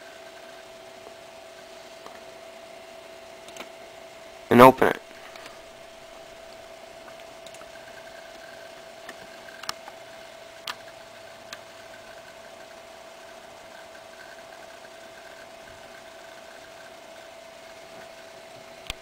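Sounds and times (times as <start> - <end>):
steady high hum: 0.0 - 19.0
computer mouse clicks: 9.1 - 9.9, 10.6 - 10.9.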